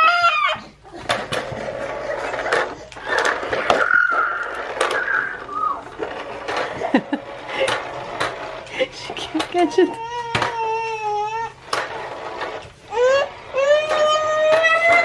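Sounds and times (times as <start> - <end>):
toys clattering on hard surface: 0.9 - 15.0
toddler squealing: 3.8 - 5.8, 12.9 - 15.0.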